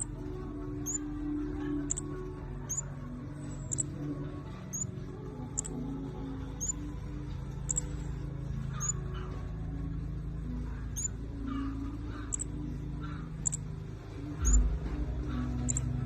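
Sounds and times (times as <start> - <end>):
bird high-pitched chip notes: 0.0 - 0.2, 0.8 - 1.2, 1.8 - 2.9, 3.5 - 3.9, 6.6 - 6.9, 14.4 - 14.7, 15.6 - 16.0
steady low hum: 0.0 - 16.0.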